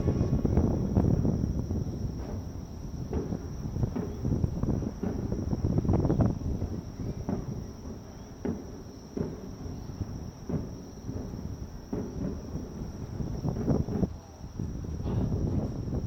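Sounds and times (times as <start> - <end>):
steady low rumble: 0.0 - 6.8
fireworks booming: 0.0 - 16.0.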